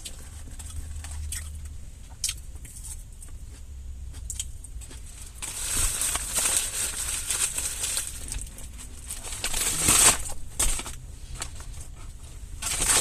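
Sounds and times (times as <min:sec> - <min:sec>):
paper wrapping crinkling: 0:05.2 - 0:13.0.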